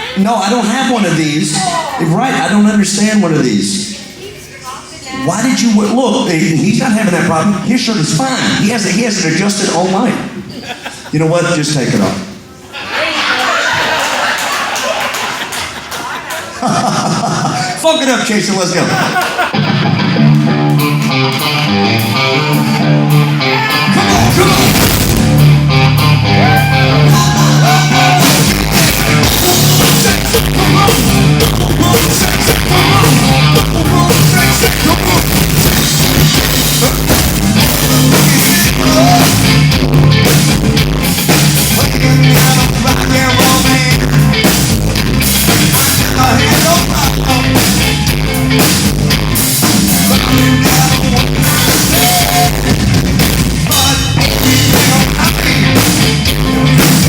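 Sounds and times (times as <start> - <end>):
guitar: 0.0 - 10.6, 16.6 - 57.0
drum kit: 19.5 - 57.0
person singing: 21.5 - 24.9, 26.2 - 39.7, 41.6 - 44.5, 45.5 - 48.5, 49.9 - 53.0, 53.6 - 56.9.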